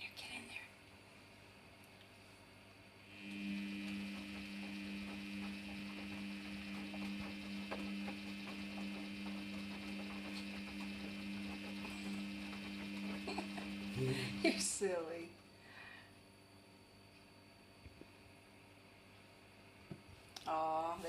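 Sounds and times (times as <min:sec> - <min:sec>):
washing machine running: 0:03.0 - 0:15.3.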